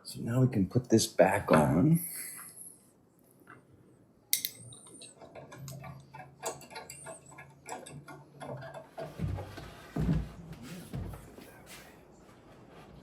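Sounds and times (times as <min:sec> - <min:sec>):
sharp click: 0:04.4 - 0:04.6
metal parts and screwdriver clicking: 0:04.4 - 0:04.7.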